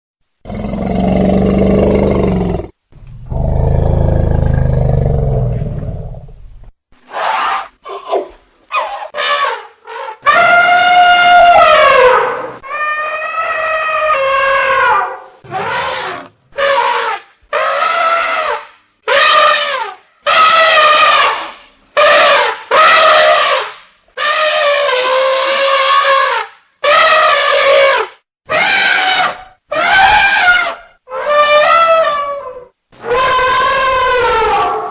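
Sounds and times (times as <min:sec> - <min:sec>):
elephant trumpeting: 0:07.1 - 0:34.9.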